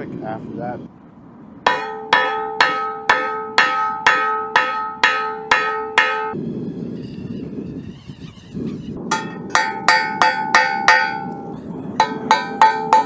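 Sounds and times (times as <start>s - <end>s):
steady rushing noise: 0.0s - 7.9s, 8.6s - 13.0s
hammer striking steel beam: 1.7s - 6.4s, 9.1s - 13.0s.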